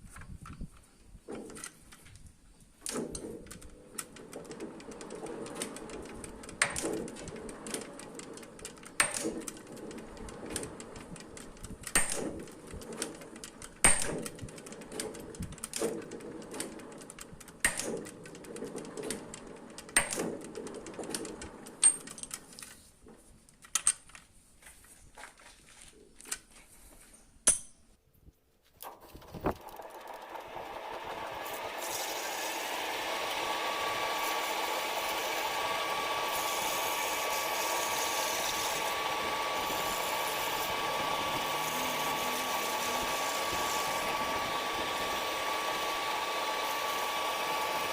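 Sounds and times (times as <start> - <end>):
metal lathe humming: 29.6 - 47.9.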